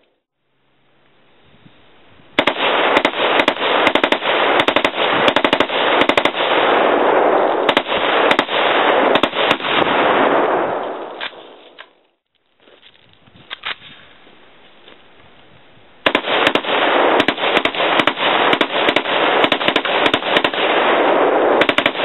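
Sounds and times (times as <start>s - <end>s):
rifle firing shots and bursts: 2.4s - 12.0s, 16.0s - 22.0s.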